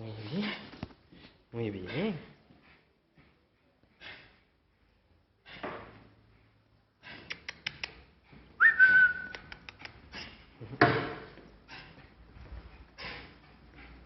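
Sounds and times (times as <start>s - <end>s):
quick sharp clicks: 7.1s - 8.0s, 9.1s - 10.0s
short whistled note: 8.6s - 9.4s.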